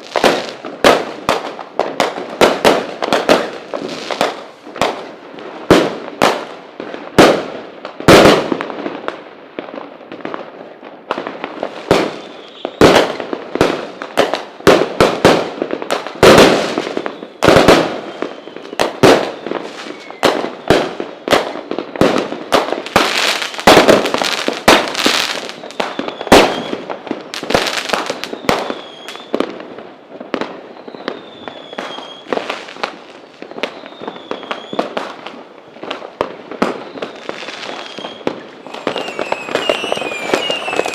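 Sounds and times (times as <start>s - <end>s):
fireworks whistling: 0.0s - 9.0s, 9.8s - 40.9s
fireworks banging: 0.0s - 40.9s
fireworks crackling: 0.0s - 40.9s.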